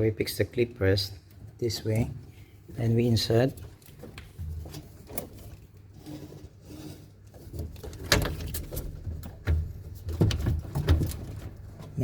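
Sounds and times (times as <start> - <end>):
hose handling clicks and knocks: 3.3 - 5.9, 7.2 - 12.0.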